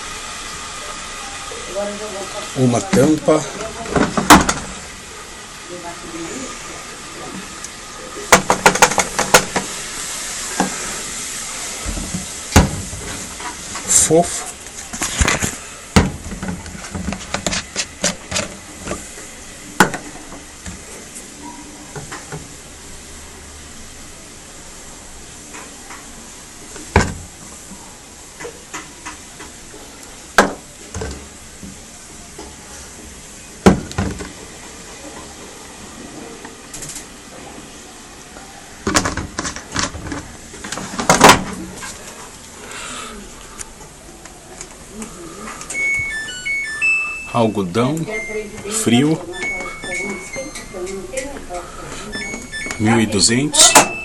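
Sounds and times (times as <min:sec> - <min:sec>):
washing machine lid knocks and clunks: 0:12.6 - 0:13.0, 0:16.0 - 0:17.2.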